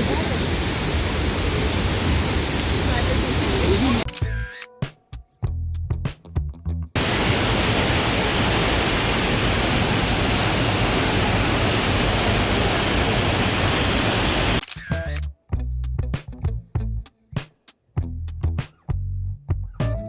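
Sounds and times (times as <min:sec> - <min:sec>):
waterfall rushing: 0:00.0 - 0:04.0, 0:07.0 - 0:14.6.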